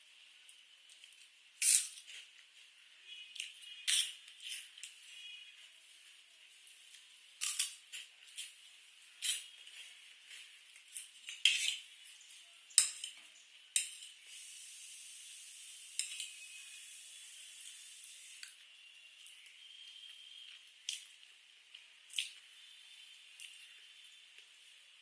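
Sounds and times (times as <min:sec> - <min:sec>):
utensils clicking against dish: 0:07.4 - 0:08.5, 0:13.8 - 0:14.2, 0:16.0 - 0:16.4
steady hiss: 0:14.2 - 0:18.4.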